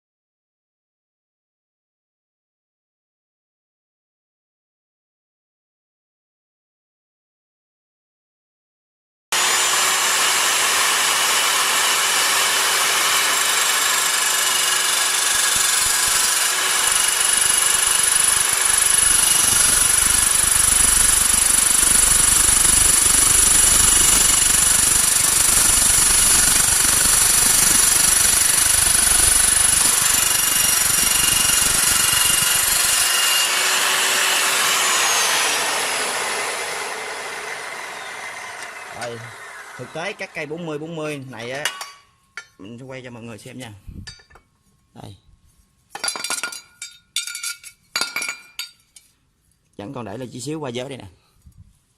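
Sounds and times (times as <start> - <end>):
chop saw whining: 9.3 - 41.6
saw blade grinding through steel: 9.4 - 40.6.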